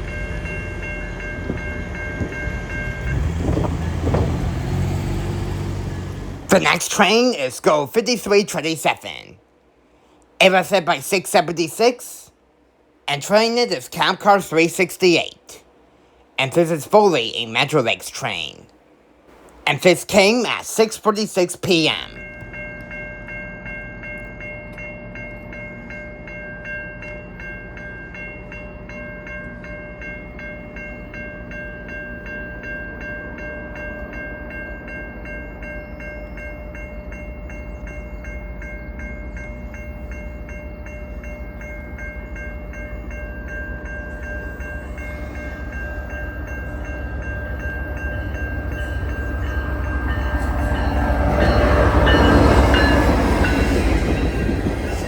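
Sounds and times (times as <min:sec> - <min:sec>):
train rumble: 0:00.0 - 0:55.0
level crossing bell ringing: 0:19.7 - 0:55.0.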